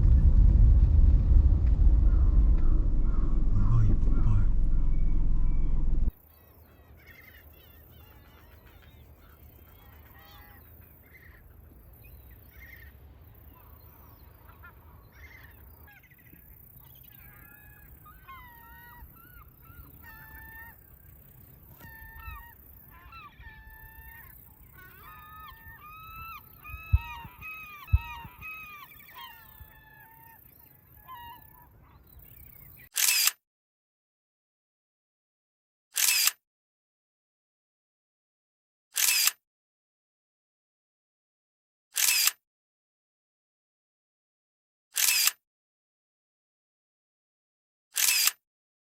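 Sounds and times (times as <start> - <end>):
brief loud burst: 0.0 - 6.1
sharp low thumps: 0.0 - 6.1, 26.7 - 28.4
flock of birds calling: 6.3 - 32.9.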